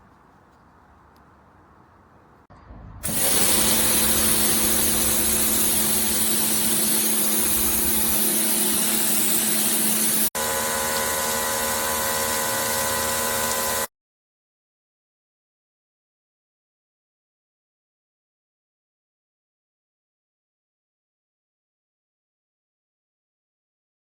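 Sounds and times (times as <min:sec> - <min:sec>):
hiss of water spray: 0:03.0 - 0:10.3
pressure washer motor hum: 0:03.0 - 0:13.9.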